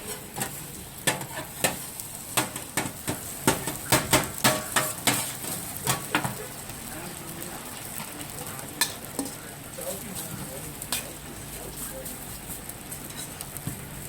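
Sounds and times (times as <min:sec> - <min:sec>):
metal utensil scraping a pan: 0:00.0 - 0:06.4, 0:10.4 - 0:13.4
food sizzling: 0:00.0 - 0:14.0.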